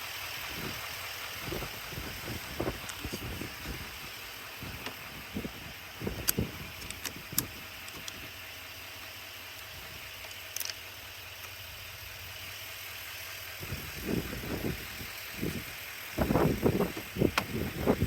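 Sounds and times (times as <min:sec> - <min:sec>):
wind buffeting microphone: 0:00.4 - 0:08.4, 0:13.6 - 0:18.0.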